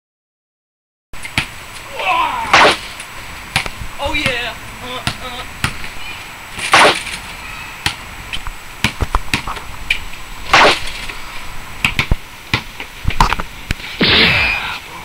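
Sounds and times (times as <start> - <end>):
basketball bouncing: 3.5 - 5.9, 7.8 - 8.0, 8.8 - 9.6, 11.8 - 13.5.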